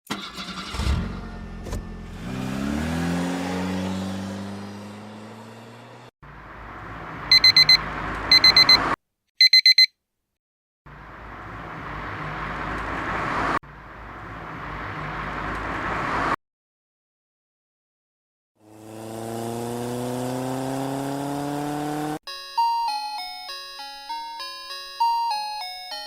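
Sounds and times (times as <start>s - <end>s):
electronic alarm beeping: 7.3s - 9.9s.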